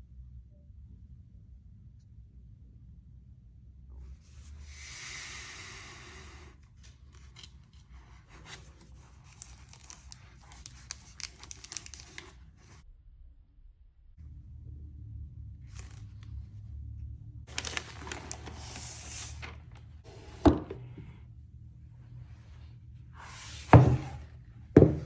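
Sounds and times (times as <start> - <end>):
packaging crinkling: 9.2 - 12.5, 17.5 - 19.7
packaging ripping: 17.5 - 19.5.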